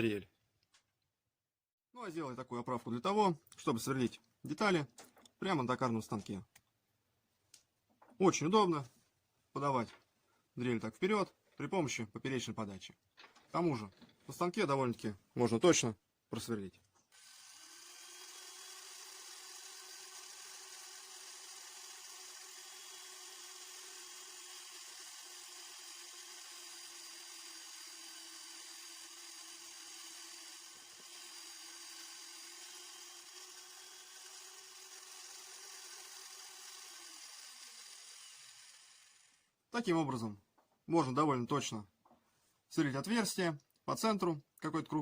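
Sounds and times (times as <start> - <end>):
electric drill whining: 17.1 - 39.5.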